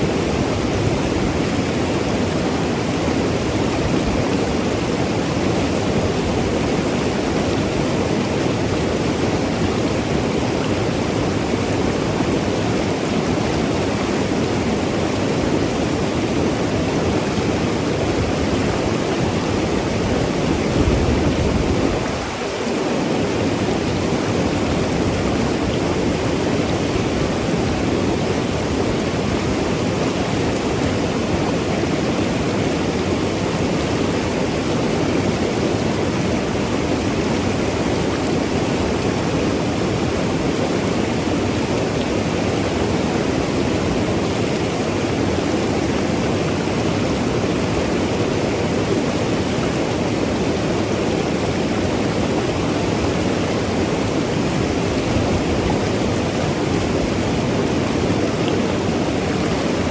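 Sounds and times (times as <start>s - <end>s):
river rushing over rocks: 0.0s - 59.9s.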